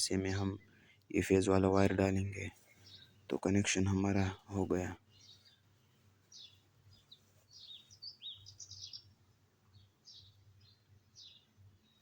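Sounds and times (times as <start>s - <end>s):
faint low hum: 0.0s - 5.0s
faint bird chirps: 2.1s - 12.0s.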